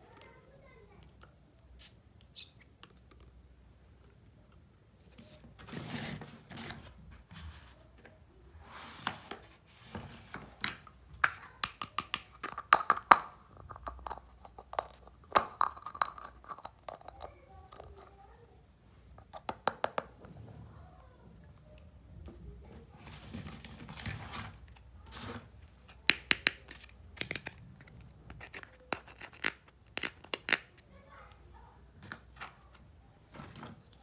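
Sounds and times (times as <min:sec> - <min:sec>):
plastic toy pieces clicking: 0:11.2 - 0:17.9, 0:26.1 - 0:30.8.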